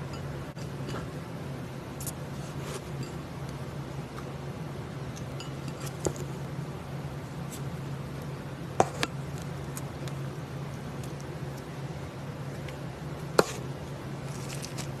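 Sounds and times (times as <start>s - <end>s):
steady low hum: 0.0s - 15.0s
crunchy slime crackling and popping: 13.4s - 15.0s.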